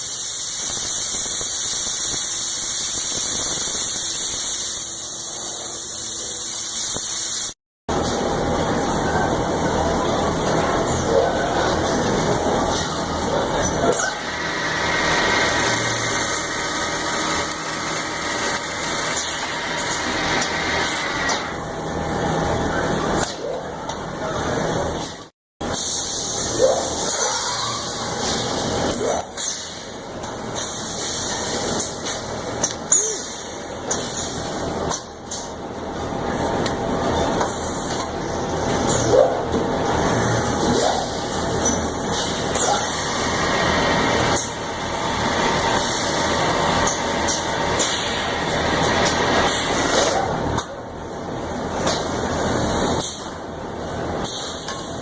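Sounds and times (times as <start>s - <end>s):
machinery humming: 7.9s - 25.0s.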